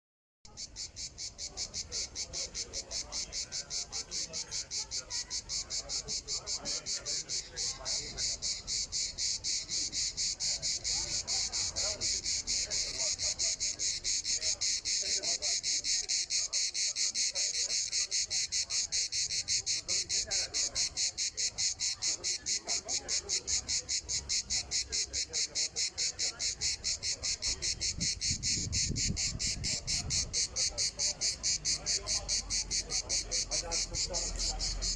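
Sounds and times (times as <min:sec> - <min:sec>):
cricket chirping: 0:00.5 - 0:34.9.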